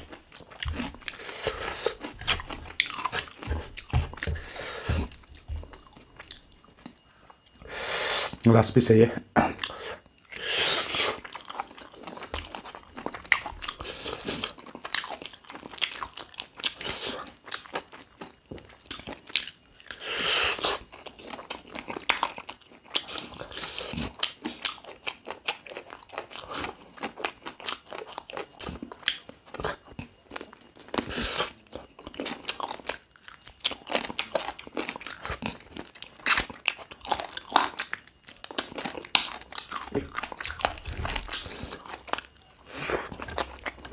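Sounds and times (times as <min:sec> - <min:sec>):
person chewing chicken: 0:00.0 - 0:08.4, 0:09.4 - 0:43.9.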